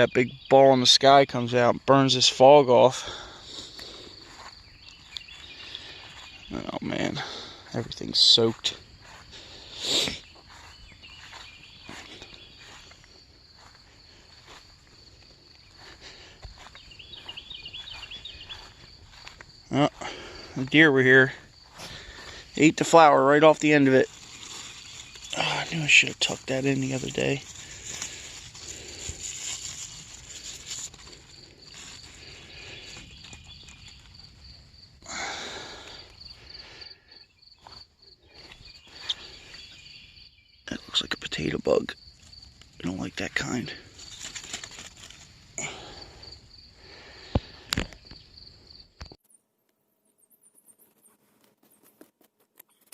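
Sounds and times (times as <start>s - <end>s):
insects chirring: 0.0s - 49.2s
footsteps through wet vegetation: 3.1s - 40.0s, 42.0s - 46.2s.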